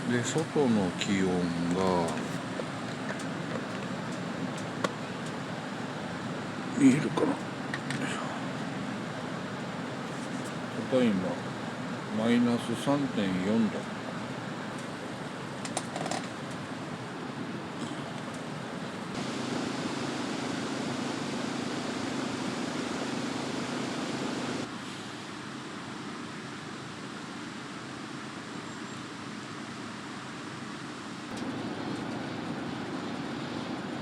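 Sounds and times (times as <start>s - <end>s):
steady rushing noise: 0.0s - 24.7s.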